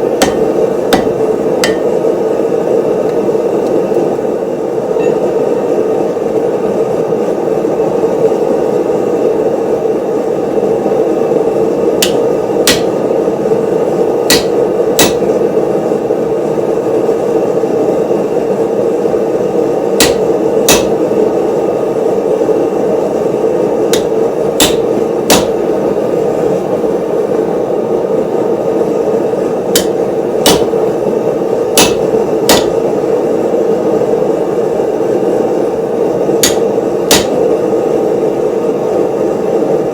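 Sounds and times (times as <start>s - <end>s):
hammer striking steel: 0.0s - 2.0s, 12.0s - 13.1s, 14.3s - 15.4s, 20.0s - 21.1s, 23.9s - 25.7s, 29.7s - 30.9s, 31.8s - 33.0s, 36.4s - 37.5s.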